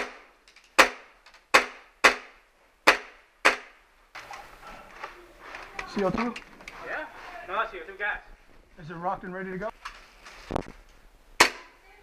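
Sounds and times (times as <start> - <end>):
airsoft pistol shots: 0.0 - 3.7.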